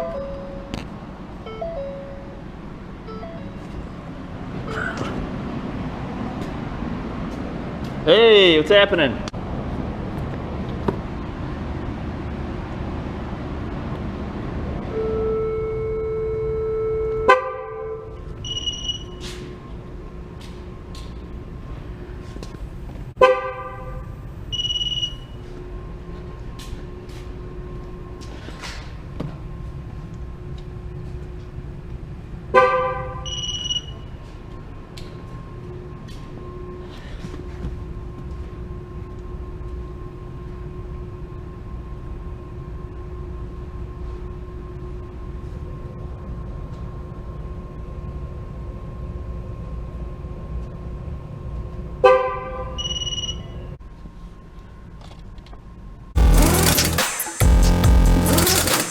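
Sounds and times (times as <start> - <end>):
high electronic beep: 0.0 - 0.7, 1.5 - 2.4, 3.1 - 3.6, 24.5 - 25.3, 56.2 - 58.9
steady low rumble: 9.2 - 15.0
vehicle horn toot: 14.9 - 18.2, 23.2 - 24.1, 32.6 - 33.6, 52.0 - 52.9
short high electronic beep: 56.2 - 58.9.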